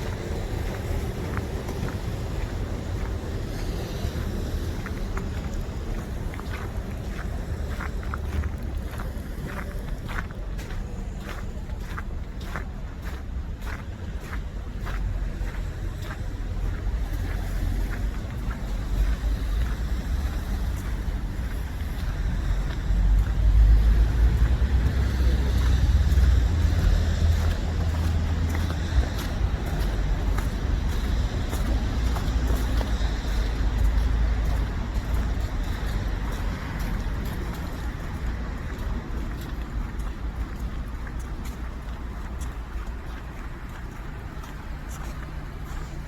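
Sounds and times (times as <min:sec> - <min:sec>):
low rumble of cars: 0:00.0 - 0:46.0
vehicle passing: 0:13.6 - 0:46.0.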